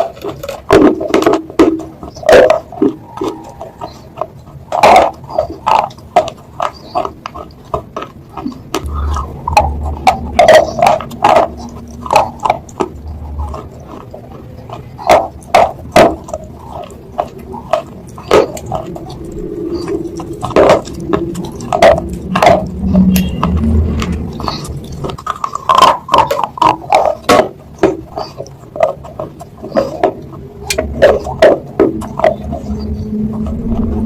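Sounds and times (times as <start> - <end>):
wet chewing and mouth smacks: 0.0 - 34.0.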